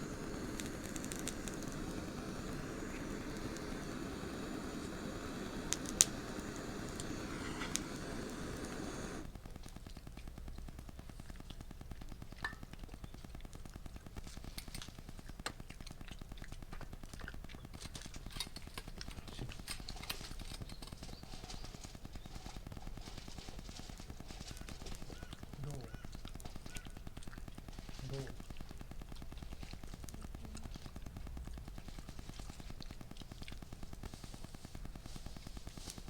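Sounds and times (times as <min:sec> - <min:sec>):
steady low rumbling: 0:00.0 - 0:09.3
wood fire crackling and popping: 0:00.0 - 0:36.0.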